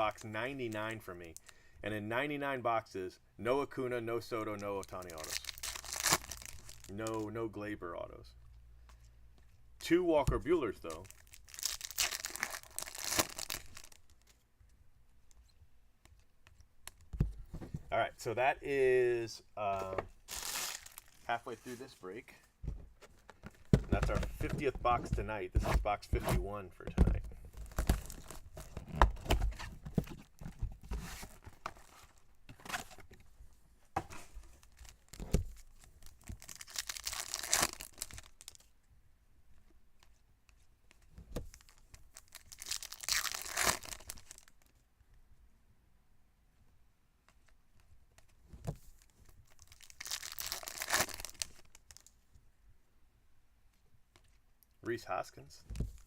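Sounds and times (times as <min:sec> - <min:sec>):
foil wrappers crinkling and tearing: 0:05.0 - 0:06.9, 0:10.9 - 0:14.2, 0:20.3 - 0:21.2, 0:36.0 - 0:38.6, 0:41.6 - 0:44.6, 0:49.5 - 0:52.1.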